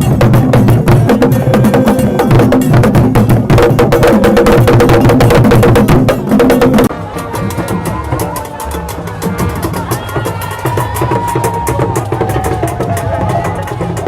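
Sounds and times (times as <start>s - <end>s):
percussion-driven music: 0.0s - 14.0s.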